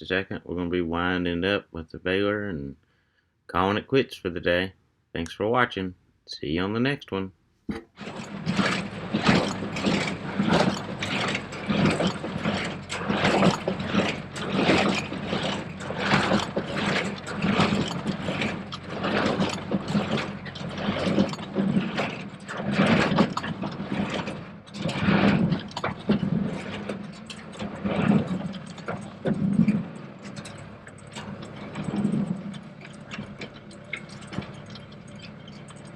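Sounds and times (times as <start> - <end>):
tractor humming: 6.9 - 35.9
baler plunger clanking: 7.7 - 21.8.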